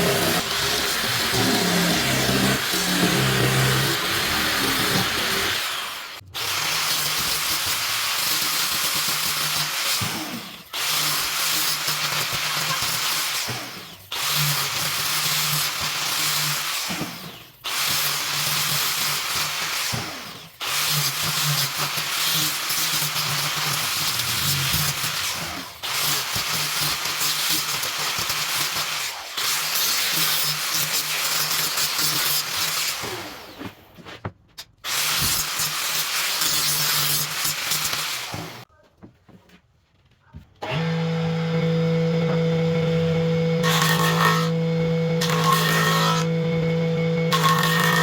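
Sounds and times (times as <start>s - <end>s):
electric power tool running: 0.0s - 6.2s, 23.2s - 25.7s, 40.6s - 48.0s.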